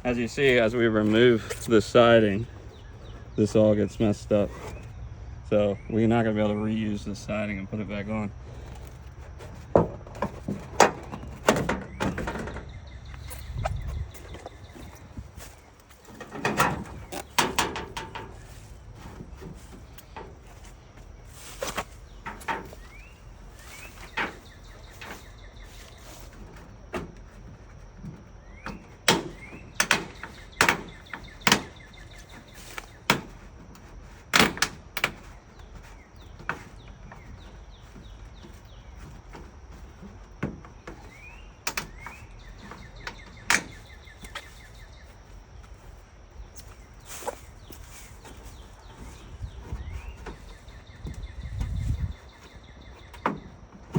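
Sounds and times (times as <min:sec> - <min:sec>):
metal siding clanking: 0:00.0 - 0:53.9
faint bird chirps: 0:18.3 - 0:26.7, 0:40.8 - 0:53.6.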